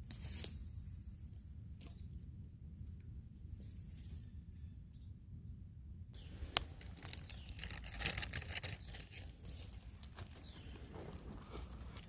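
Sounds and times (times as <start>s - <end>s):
bird chirp: 1.9s - 3.4s, 6.2s - 12.0s
rustling and crackling clicks: 6.5s - 12.0s.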